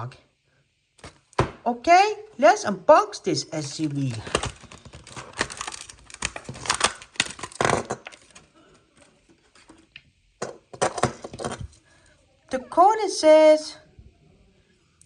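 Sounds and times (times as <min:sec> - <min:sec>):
plastic packaging crackling: 0:03.6 - 0:09.8.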